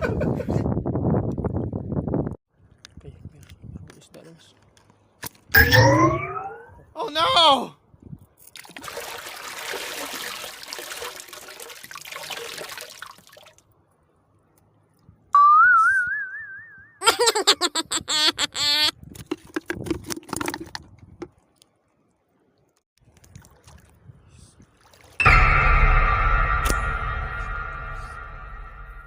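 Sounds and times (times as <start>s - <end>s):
warbling sound effects: 5.6s - 6.9s
warbling whistle tone: 5.6s - 6.9s, 15.4s - 17.0s
water splashing: 8.5s - 13.7s, 23.0s - 24.1s, 24.7s - 25.3s.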